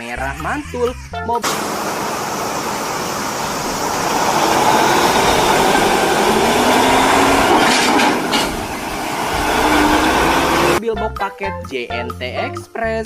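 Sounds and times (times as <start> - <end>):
engine running: 1.4 - 10.8
rushing noise: 1.4 - 10.8.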